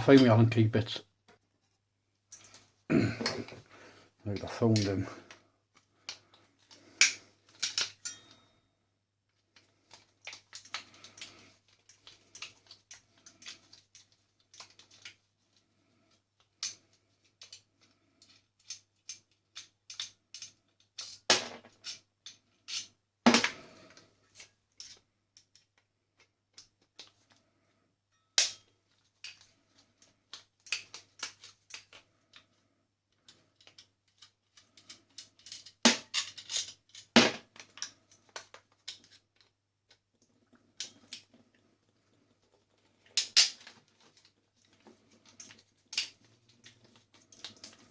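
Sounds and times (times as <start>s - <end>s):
hand tools clicking and clattering: 6.1s - 8.6s, 33.2s - 39.5s, 43.0s - 47.9s.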